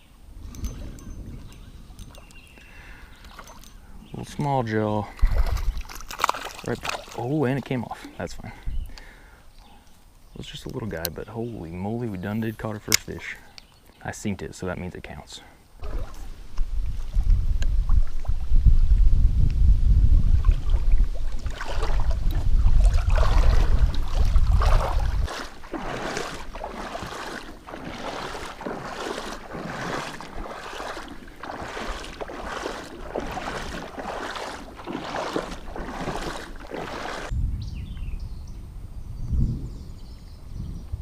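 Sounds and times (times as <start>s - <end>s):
paddle strokes swishing in water: 15.8s - 18.6s, 20.2s - 37.3s.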